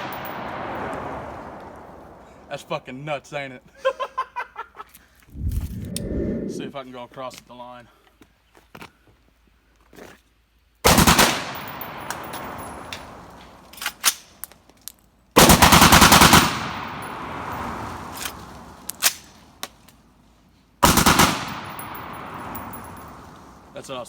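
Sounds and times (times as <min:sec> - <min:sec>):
rifle shots in rapid bursts: 0:10.9 - 0:11.7, 0:15.4 - 0:16.8, 0:20.8 - 0:21.9.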